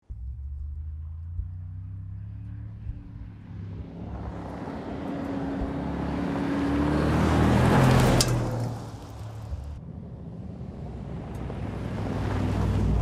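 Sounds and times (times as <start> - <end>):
car engine hum passing: 0.0 - 13.0.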